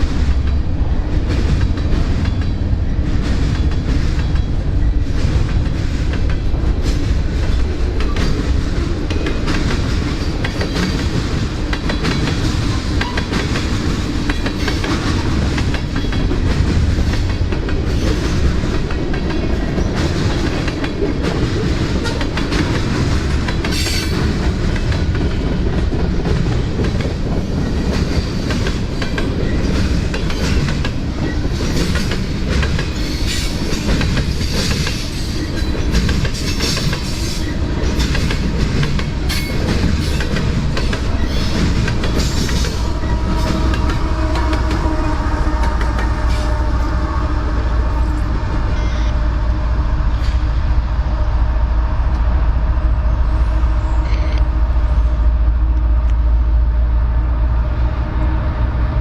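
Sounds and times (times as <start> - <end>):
train wheels clicking over rail joints: 0.0 - 47.2.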